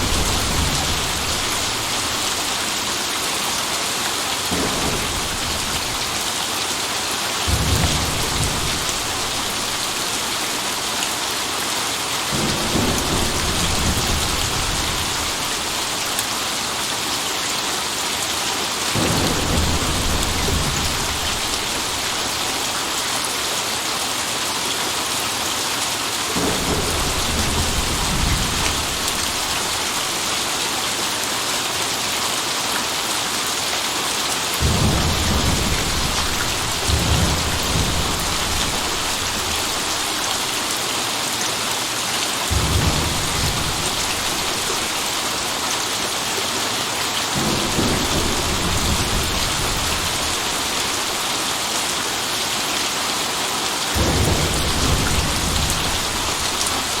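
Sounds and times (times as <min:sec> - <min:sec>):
low rolls of thunder: 0:00.0 - 0:03.0, 0:04.5 - 0:06.4, 0:07.5 - 0:10.8, 0:12.3 - 0:16.0, 0:19.0 - 0:22.7, 0:26.4 - 0:30.5, 0:34.6 - 0:40.7, 0:42.5 - 0:45.5, 0:47.4 - 0:51.5, 0:54.0 - 0:57.0
steady rain: 0:00.0 - 0:57.0.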